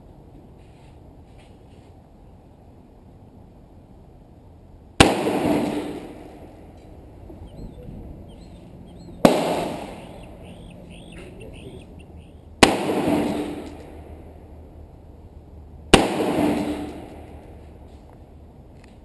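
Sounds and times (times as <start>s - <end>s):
gunshots with echoing tail: 5.0s - 6.2s, 9.2s - 11.8s, 12.6s - 14.0s, 15.9s - 17.2s.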